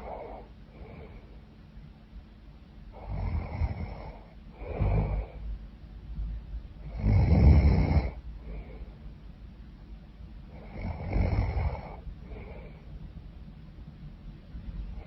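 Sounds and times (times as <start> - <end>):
quiet breathing: 0.0 - 15.0
woman snoring: 3.0 - 5.4, 6.8 - 8.2, 10.6 - 12.6.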